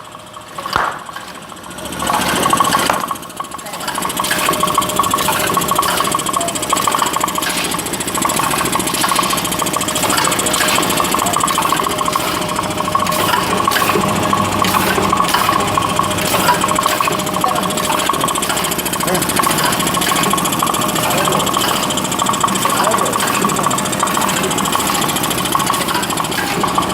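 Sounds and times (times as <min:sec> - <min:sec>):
packing machine chattering: 0:00.0 - 0:26.9
sharp machine clicks: 0:00.0 - 0:26.9
ringing tone: 0:03.5 - 0:13.7.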